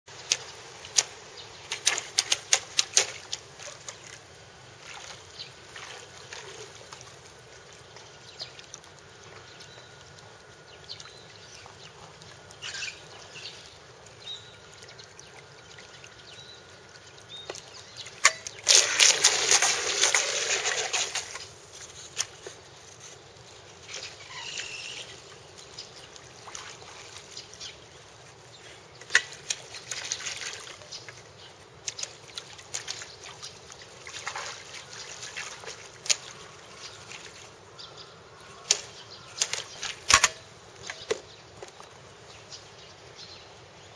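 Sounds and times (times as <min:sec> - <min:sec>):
churning splashing: 0:00.1 - 0:42.2
water trickling and splashing: 0:00.1 - 0:43.9.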